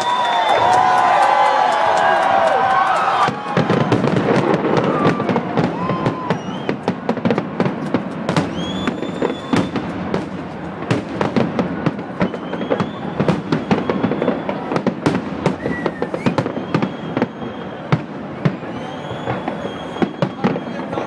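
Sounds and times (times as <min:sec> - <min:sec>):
firework whistles: 0:00.0 - 0:00.8, 0:03.2 - 0:07.0, 0:07.8 - 0:10.1, 0:12.1 - 0:21.0
fireworks bangs and crackles: 0:00.0 - 0:21.0.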